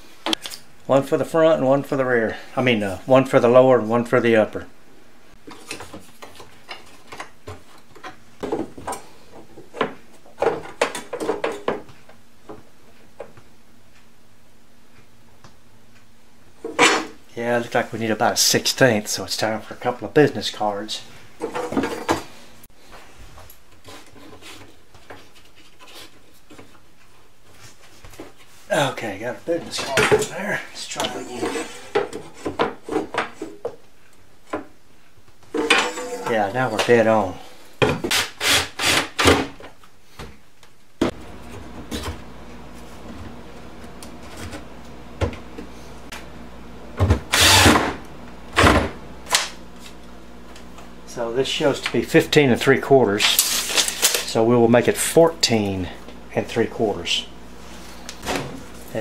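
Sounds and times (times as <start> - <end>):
low electrical hum: 0.0 - 59.0
rattling scrape: 31.1 - 32.4, 35.6 - 36.3.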